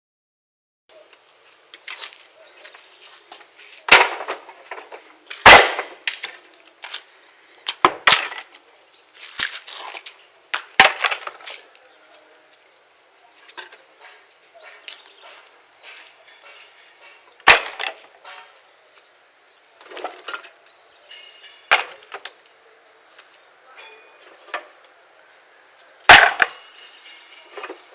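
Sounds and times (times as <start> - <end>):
wood clattering: 1.8 - 7.1, 7.7 - 8.6, 9.2 - 11.6, 13.4 - 18.6, 19.8 - 22.4, 26.1 - 27.9.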